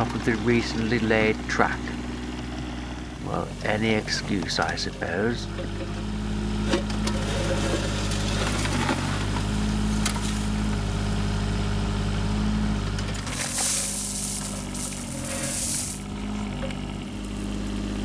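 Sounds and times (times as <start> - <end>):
small digger engine running: 0.0 - 18.0
rushing hiss: 13.3 - 16.2.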